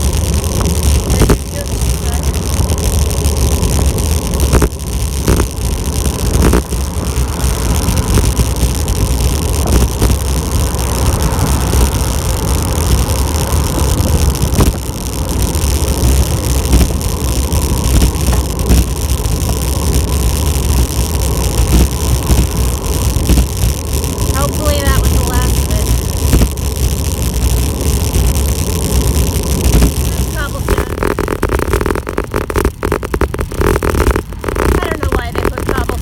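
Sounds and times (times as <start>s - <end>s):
road noise rumble: 0.0s - 36.0s
wind buffeting microphone: 0.0s - 36.0s.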